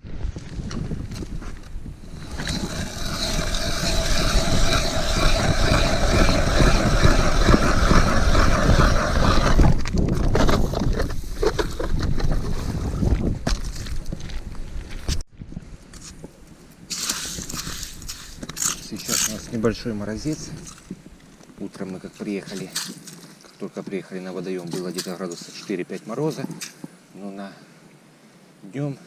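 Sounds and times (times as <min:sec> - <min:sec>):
strong wind buffeting microphone: 0:00.0 - 0:15.8.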